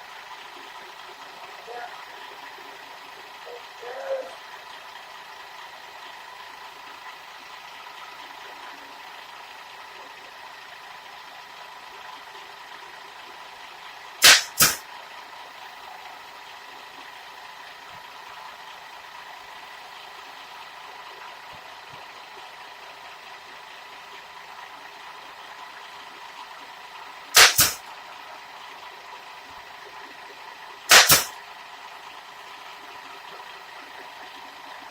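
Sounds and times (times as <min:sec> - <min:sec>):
pneumatic nail gun firing: 0:14.2 - 0:14.8, 0:27.4 - 0:27.8, 0:30.9 - 0:31.3.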